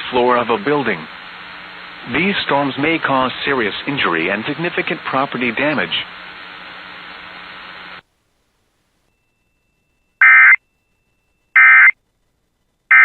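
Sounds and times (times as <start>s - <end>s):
radio hiss: 0.0s - 8.0s.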